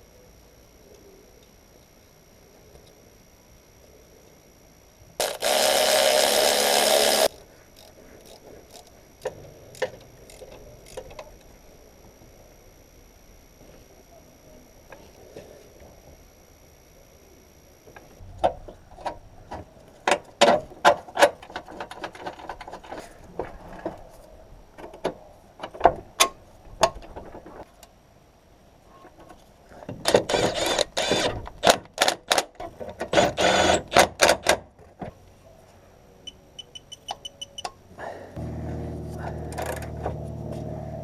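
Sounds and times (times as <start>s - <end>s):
ratchet wrench rattling: 5.2s - 11.4s.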